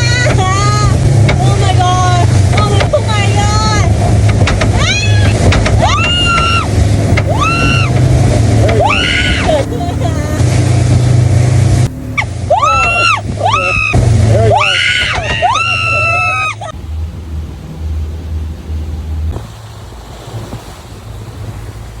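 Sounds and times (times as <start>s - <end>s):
boat engine droning: 0.0s - 22.0s
rough water waves: 0.0s - 22.0s
woman screaming: 4.8s - 6.7s, 7.3s - 8.0s, 8.7s - 10.5s, 12.2s - 16.7s.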